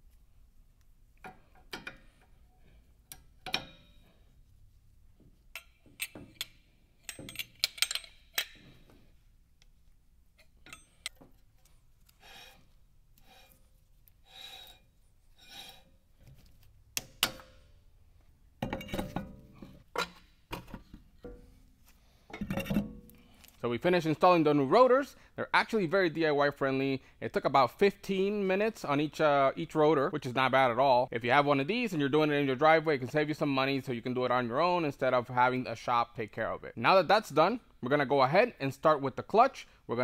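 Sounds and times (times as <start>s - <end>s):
metal tools clinking: 5.5s - 8.8s, 10.4s - 11.2s.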